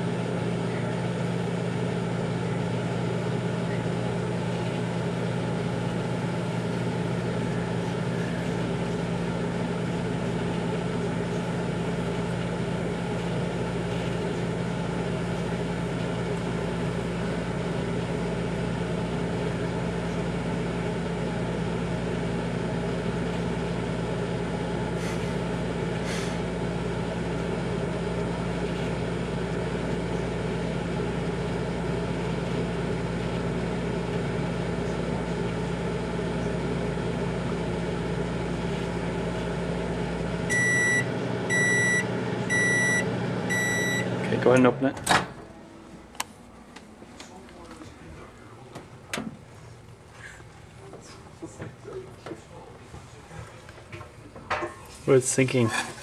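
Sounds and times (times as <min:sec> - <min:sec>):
microwave oven humming: 0:00.0 - 0:56.0.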